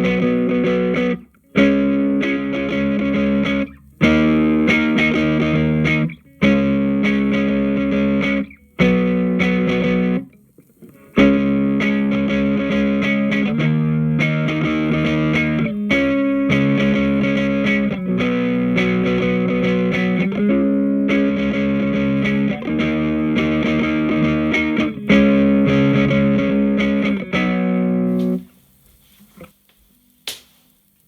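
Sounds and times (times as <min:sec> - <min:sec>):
electric guitar chords: 0:00.0 - 0:28.5
sharp click: 0:30.2 - 0:30.6.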